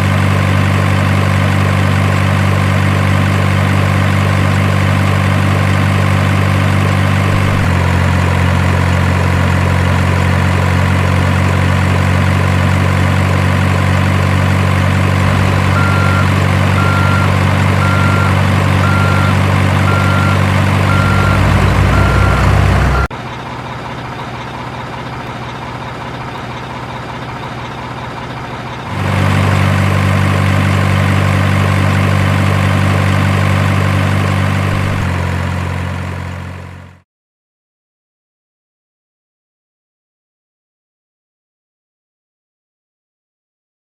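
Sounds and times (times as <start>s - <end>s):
diesel engine idling: 0.0s - 37.0s
repeated beep: 15.3s - 23.1s.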